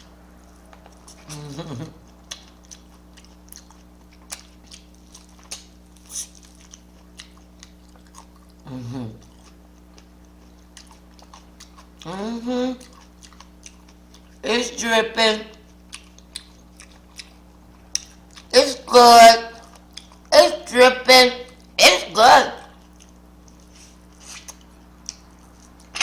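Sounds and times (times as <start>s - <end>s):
low electrical hum: 0.0s - 26.0s
chewing and biting: 0.4s - 12.2s, 12.8s - 14.4s, 15.5s - 18.6s, 19.5s - 20.3s, 22.7s - 26.0s
wet mouth clicks and smacks: 2.2s - 8.6s
short voiced sound: 20.4s - 22.7s.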